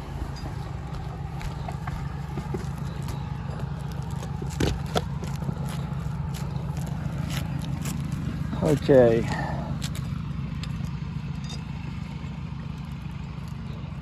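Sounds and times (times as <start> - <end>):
steady low hum: 0.0 - 14.0
clicks knocks and scrapes on roof: 4.1 - 5.7.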